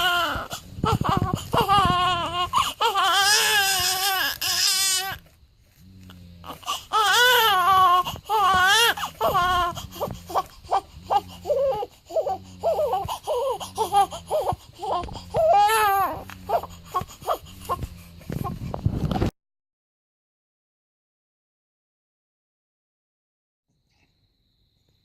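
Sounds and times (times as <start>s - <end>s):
newborn baby crying: 0.0s - 5.2s, 6.4s - 18.6s.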